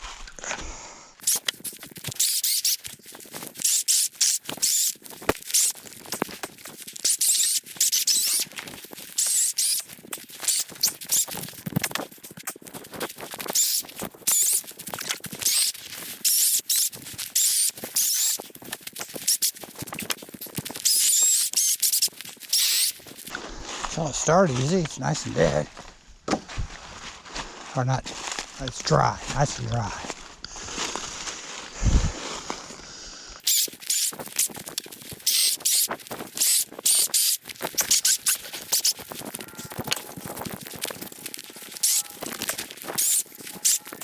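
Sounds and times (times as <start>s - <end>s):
hand saw cutting wood: 1.2s - 5.7s, 9.2s - 11.4s, 15.4s - 19.5s, 20.8s - 23.3s.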